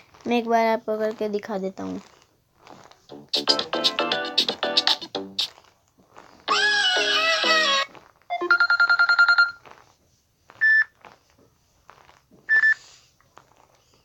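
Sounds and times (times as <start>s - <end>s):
phone ringtone melody: 7.0s - 9.6s
rapid electronic ring tones: 7.6s - 9.6s.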